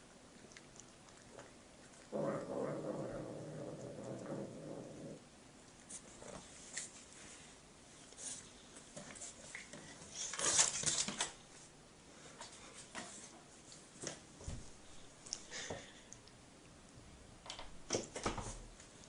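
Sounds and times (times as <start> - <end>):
cats scuffling and rustling: 5.8 - 15.9.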